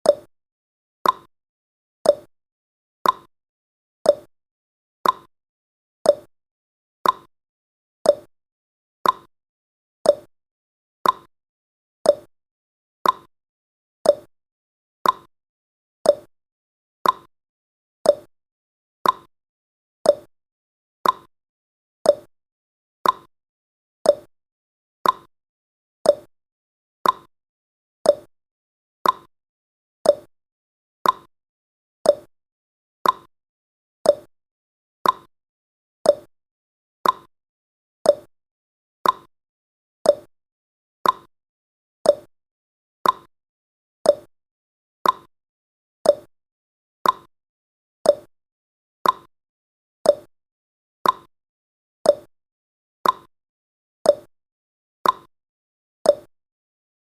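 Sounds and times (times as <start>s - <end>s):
timer ticking: 0.0s - 0.3s, 1.0s - 1.3s, 2.1s - 2.3s, 3.0s - 3.3s, 4.1s - 4.3s, 5.0s - 5.3s, 6.1s - 6.3s, 7.0s - 7.3s, 8.1s - 8.3s, 9.0s - 9.3s, 10.1s - 10.3s, 11.0s - 11.3s, 12.1s - 12.3s, 13.0s - 13.3s, 14.0s - 14.3s, 15.0s - 15.3s, 16.1s - 16.3s, 17.0s - 17.3s, 18.1s - 18.3s, 19.0s - 19.3s, 20.1s - 20.3s, 21.0s - 21.3s, 22.1s - 22.3s, 23.0s - 23.3s, 24.1s - 24.3s, 25.0s - 25.3s, 26.1s - 26.3s, 27.0s - 27.3s, 28.0s - 28.3s, 29.0s - 29.3s, 30.0s - 30.3s, 31.0s - 31.3s, 32.0s - 32.3s, 33.0s - 33.3s, 34.0s - 34.3s, 35.0s - 35.3s, 36.0s - 36.3s, 37.0s - 37.3s, 38.1s - 38.3s, 39.0s - 39.3s, 40.0s - 40.3s, 41.0s - 41.3s, 42.0s - 42.3s, 43.0s - 43.3s, 44.1s - 44.3s, 45.0s - 45.3s, 46.0s - 46.3s, 47.0s - 47.3s, 48.1s - 48.3s, 49.0s - 49.3s, 50.1s - 50.3s, 51.0s - 51.3s, 52.1s - 52.3s, 53.0s - 53.3s, 54.1s - 54.3s, 55.0s - 55.3s, 56.1s - 56.3s.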